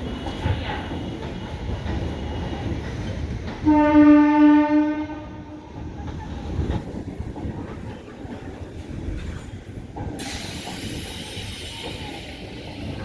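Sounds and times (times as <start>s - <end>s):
electric train rumbling: 0.0s - 13.0s
train horn blast: 3.6s - 5.7s.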